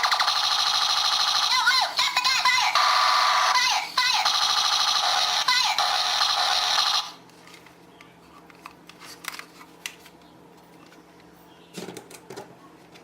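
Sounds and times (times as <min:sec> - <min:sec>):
electronic toy sound: 0:00.0 - 0:07.2.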